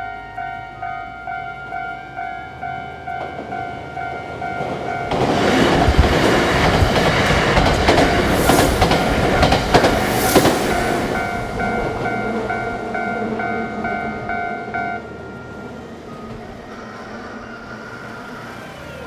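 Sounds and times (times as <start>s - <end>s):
train wheels clattering over rail joints: 4.7s - 11.6s.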